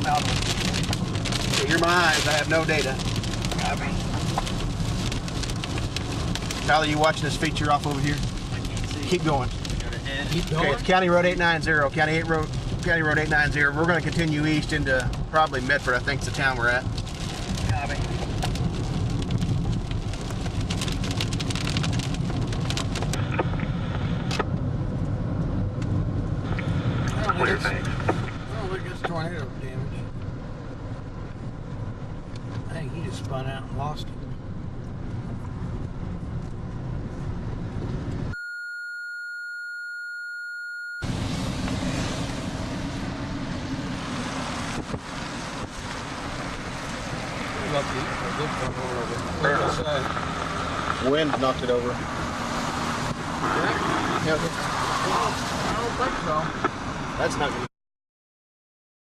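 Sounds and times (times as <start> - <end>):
rain hitting a car: 0.0 - 38.3, 41.0 - 57.7
road and engine rumble: 0.0 - 38.6, 41.0 - 57.7
high electronic beep tone: 38.3 - 41.0.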